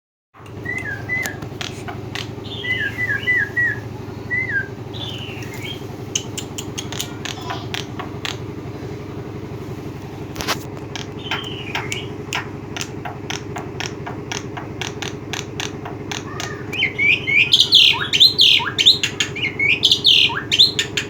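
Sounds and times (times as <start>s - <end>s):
sharp clicks: 0.4s - 2.4s, 5.4s - 8.5s, 10.3s - 16.9s
steady low hum: 0.4s - 21.0s
bird whistling calls: 0.5s - 7.2s, 11.2s - 21.0s.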